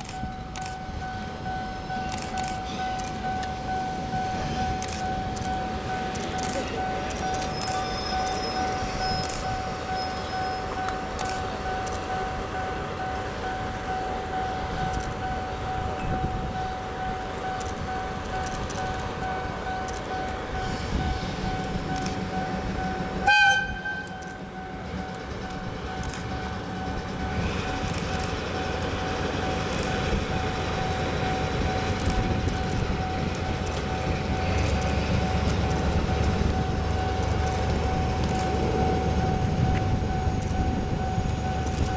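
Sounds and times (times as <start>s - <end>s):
diesel engine rumble: 10.7s - 41.9s
locomotive horn blast: 23.2s - 24.3s.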